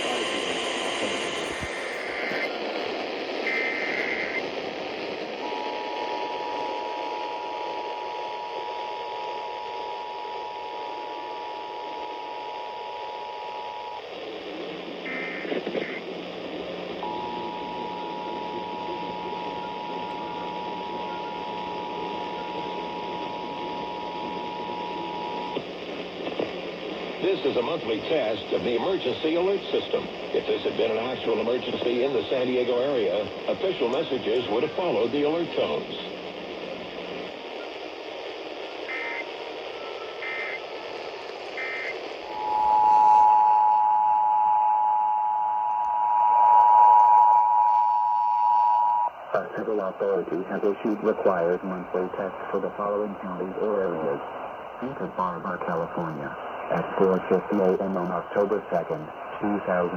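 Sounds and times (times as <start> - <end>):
broadcast hiss: 0.0 - 59.9
data-burst chirps: 41.6 - 45.0
two-tone alert signal: 42.3 - 45.1
two-tone attention signal: 42.3 - 49.0.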